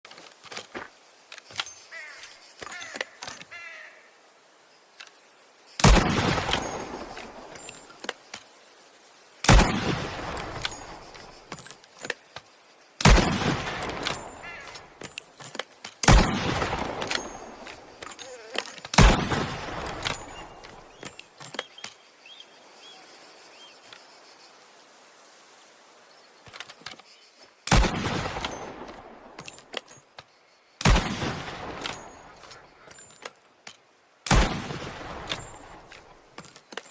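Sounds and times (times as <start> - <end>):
rifle shots echoing: 5.8 - 7.1, 9.4 - 10.9, 13.0 - 14.4, 16.0 - 17.7, 19.0 - 20.5, 27.7 - 29.1, 30.8 - 32.4, 34.3 - 35.7.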